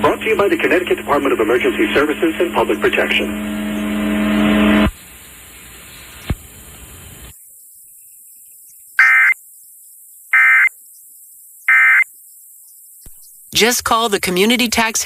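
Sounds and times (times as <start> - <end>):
buzzy digital data bursts: 0.0 - 5.7
radio hiss: 0.0 - 7.3.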